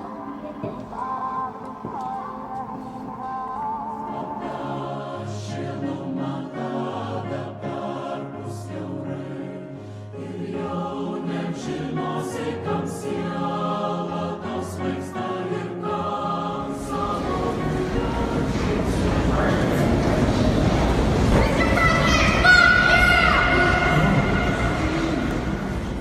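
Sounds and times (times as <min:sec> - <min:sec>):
choir singing: 0:00.0 - 0:26.0
low held notes: 0:16.6 - 0:26.0.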